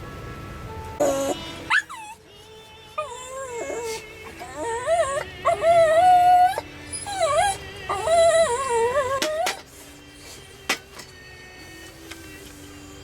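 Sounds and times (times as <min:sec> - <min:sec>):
dog whining and howling: 0:01.0 - 0:02.3, 0:03.0 - 0:10.6.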